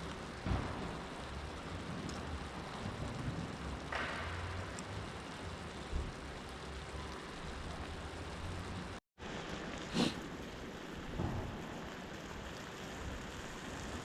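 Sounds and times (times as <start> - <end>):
sharp fire pops: 0.0 - 5.0, 11.0 - 14.0
campfire crackling: 0.0 - 14.0.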